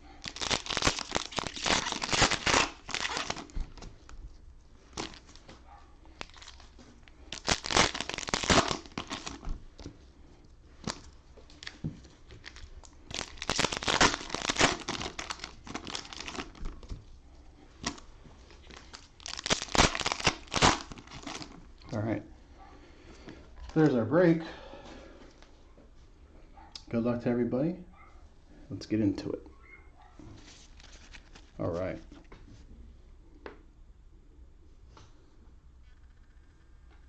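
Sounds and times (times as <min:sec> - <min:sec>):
cellophane wrappers crinkling and tearing: 0:00.0 - 0:03.9, 0:04.8 - 0:05.4, 0:06.1 - 0:09.6, 0:10.8 - 0:17.0, 0:17.8 - 0:22.0, 0:30.6 - 0:31.6.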